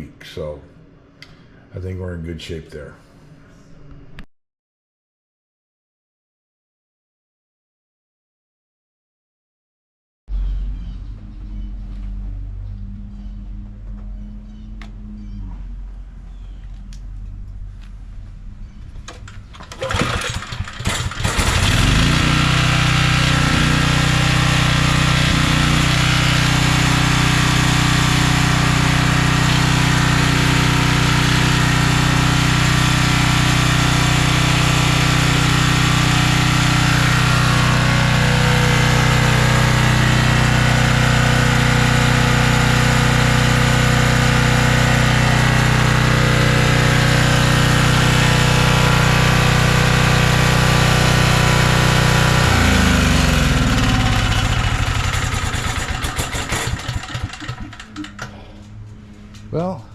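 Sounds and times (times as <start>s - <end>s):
generator engine running: 10.3s - 59.7s
generator engine cranking: 19.0s - 59.4s.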